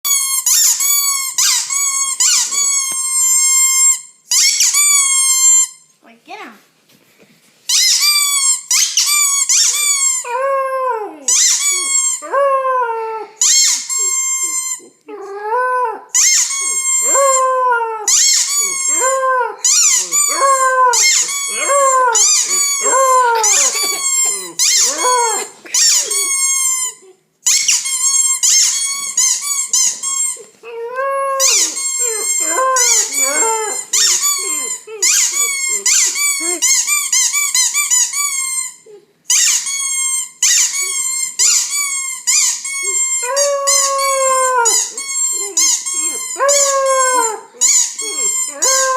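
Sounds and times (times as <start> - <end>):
squeaky toy squeezed: 0.0 - 5.9, 7.7 - 10.2, 11.3 - 12.2, 13.4 - 14.9, 16.1 - 17.4, 18.1 - 19.0, 19.6 - 30.5, 31.4 - 48.9
puppy howling: 14.0 - 27.1, 30.2 - 36.8, 42.8 - 48.9.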